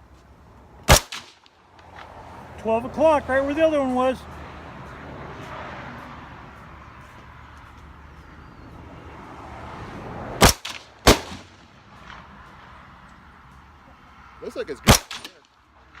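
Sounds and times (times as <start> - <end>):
rifle shots: 0.9 - 1.4, 10.4 - 11.6, 14.9 - 15.4.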